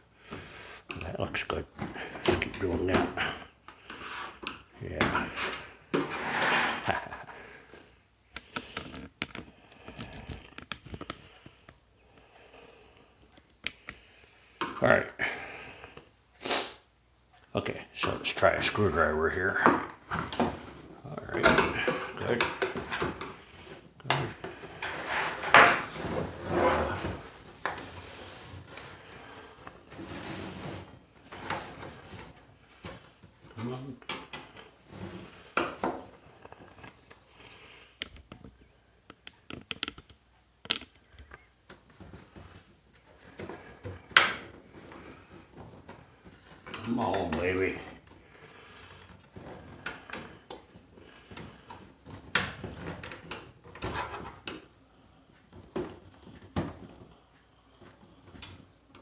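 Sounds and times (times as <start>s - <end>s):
plastic scraping and straining: 1.1s - 7.3s, 19.3s - 54.8s
plastic case scraping creak: 24.3s - 27.5s.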